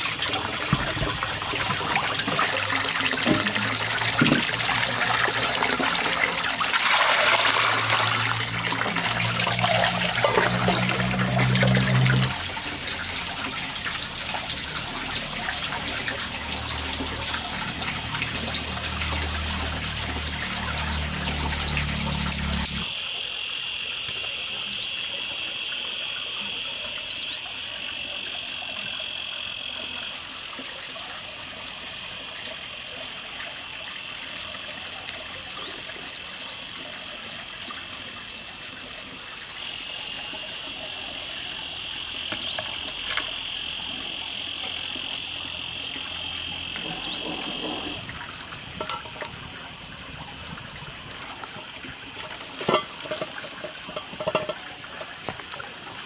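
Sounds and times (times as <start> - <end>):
high-pitched animal chorus: 39.6 - 48.2.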